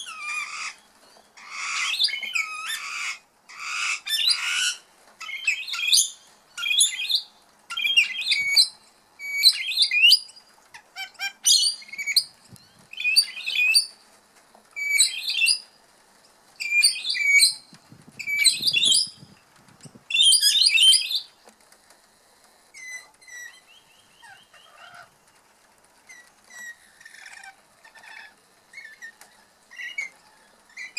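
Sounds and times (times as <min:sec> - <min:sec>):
songbird twittering: 0:11.4 - 0:13.9, 0:14.8 - 0:15.6, 0:16.6 - 0:19.3, 0:20.1 - 0:21.3
soft bird chirps: 0:22.8 - 0:25.5.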